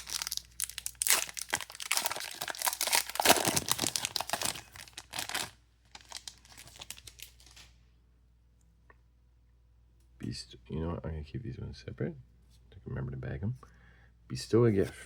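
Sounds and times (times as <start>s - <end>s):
foil wrapper crinkling and tearing: 0.0s - 7.7s.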